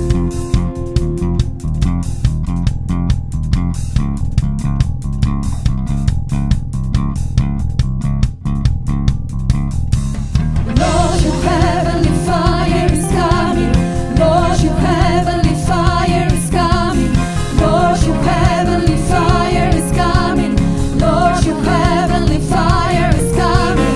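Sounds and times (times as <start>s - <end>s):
band playing bass and guitar: 0.0s - 23.9s
person singing: 10.7s - 23.9s.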